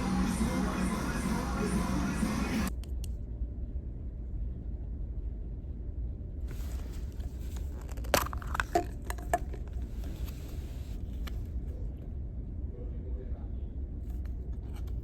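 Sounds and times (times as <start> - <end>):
ferry engines humming: 0.0 - 2.7.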